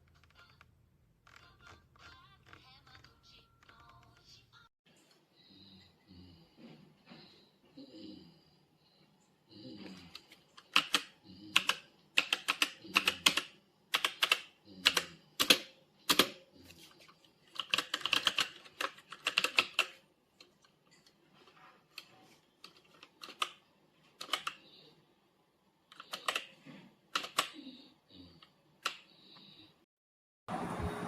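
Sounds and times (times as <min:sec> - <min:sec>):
mechanical keyboard typing: 0:10.6 - 0:16.4, 0:17.5 - 0:20.5, 0:21.9 - 0:23.6, 0:24.2 - 0:24.6, 0:25.9 - 0:27.6.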